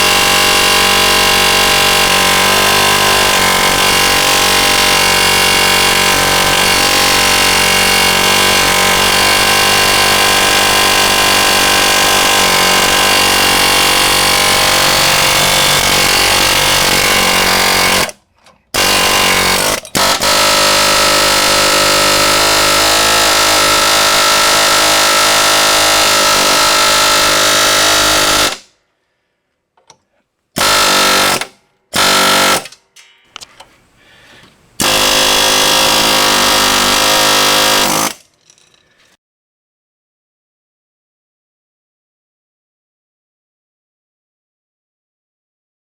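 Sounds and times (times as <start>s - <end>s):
pneumatic air hammer buzzing: 0.0s - 28.7s, 30.6s - 33.6s, 34.4s - 39.1s.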